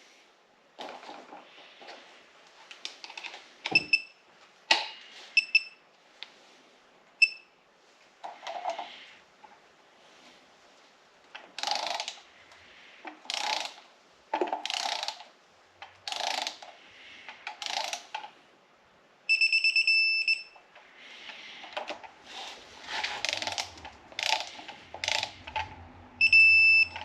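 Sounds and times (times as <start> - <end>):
ratchet wrench clicking: 11.6 - 12.2, 13.3 - 13.8, 14.6 - 15.2, 16.0 - 16.6, 17.6 - 18.1, 23.2 - 25.4.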